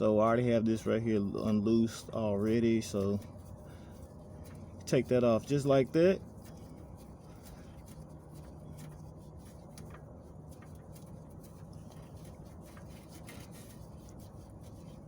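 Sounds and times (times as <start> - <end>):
steady low hum: 0.0 - 15.0
oil filter clicking and scraping: 0.6 - 15.0.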